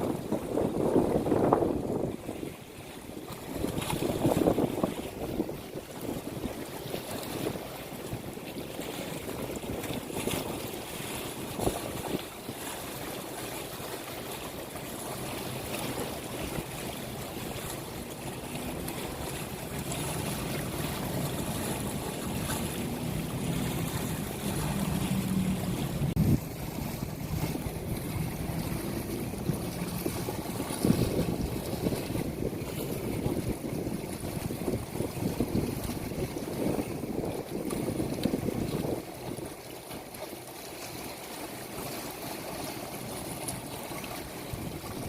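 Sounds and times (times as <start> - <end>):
wind buffeting microphone: 0.0 - 40.3, 42.6 - 45.0
water rushing: 0.0 - 45.0.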